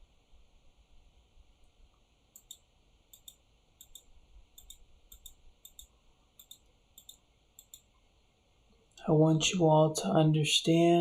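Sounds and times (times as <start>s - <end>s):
faint high-pitched clicks: 1.6s - 8.1s.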